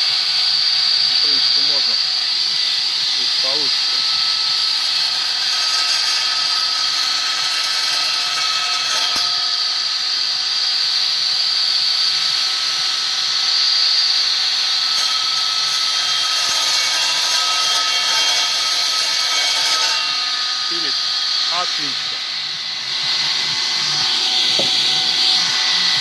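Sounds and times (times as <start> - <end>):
stone-cutting saw whining: 0.0 - 26.0.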